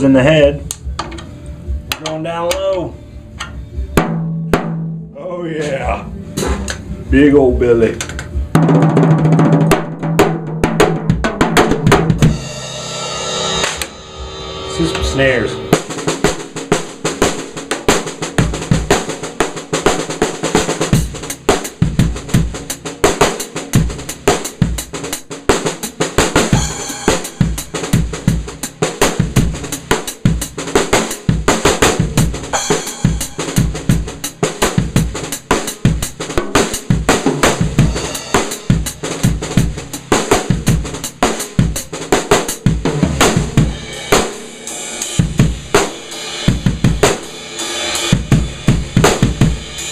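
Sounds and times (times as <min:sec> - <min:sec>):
bass drum hits: 0:03.8 - 0:07.0, 0:08.4 - 0:16.7, 0:36.9 - 0:41.0, 0:42.7 - 0:44.4
low-tuned snare drum: 0:03.9 - 0:49.9.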